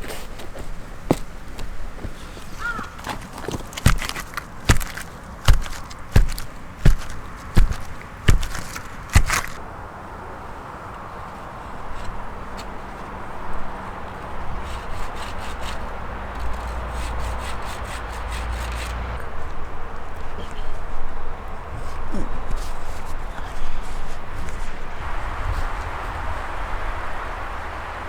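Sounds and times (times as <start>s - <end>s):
chopping blows: 2.8s - 9.6s.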